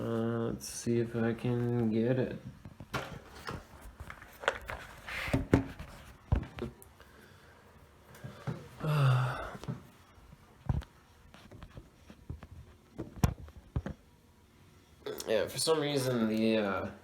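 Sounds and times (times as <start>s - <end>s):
person sighing: 8.3s - 9.8s.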